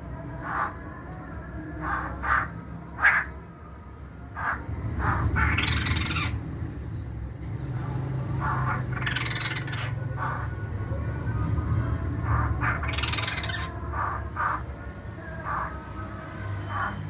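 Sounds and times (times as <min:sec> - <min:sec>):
bird calling harsh notes: 0:04.4 - 0:06.4, 0:08.4 - 0:10.5, 0:12.4 - 0:14.6.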